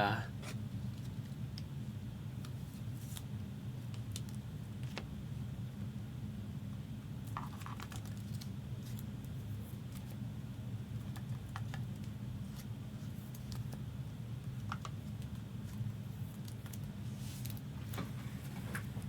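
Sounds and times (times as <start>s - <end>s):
steady low hum: 0.0s - 7.6s.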